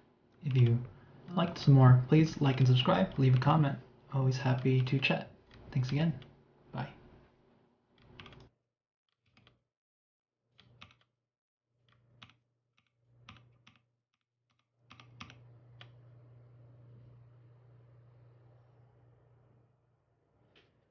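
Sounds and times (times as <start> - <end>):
mechanical keyboard typing: 8.0 - 8.5, 10.6 - 11.1, 14.9 - 15.9.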